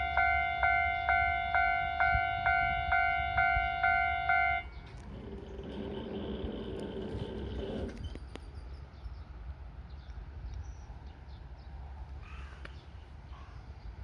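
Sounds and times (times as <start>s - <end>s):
level crossing warning bell: 0.0s - 4.8s
crows cawing: 12.2s - 12.8s.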